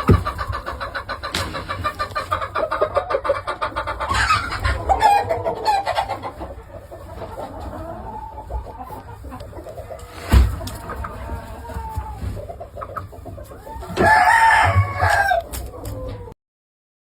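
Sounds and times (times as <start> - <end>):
sharp thump: 0.0 - 0.5, 10.3 - 10.7
chickens clucking: 0.0 - 16.4.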